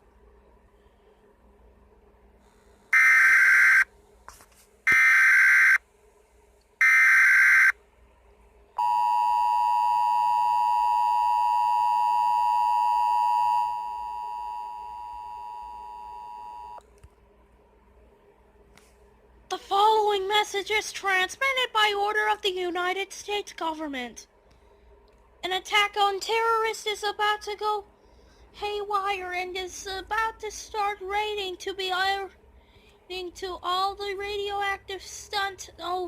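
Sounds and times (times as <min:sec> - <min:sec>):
screeching data bursts: 0:03.0 - 0:03.8, 0:06.8 - 0:07.7
click: 0:16.8 - 0:17.2, 0:24.5 - 0:25.3.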